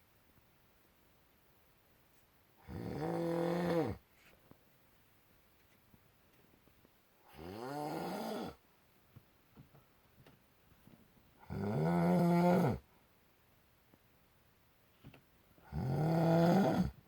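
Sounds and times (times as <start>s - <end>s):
man snoring loudly: 2.6s - 4.0s, 7.3s - 8.6s, 11.4s - 12.8s, 15.7s - 17.0s.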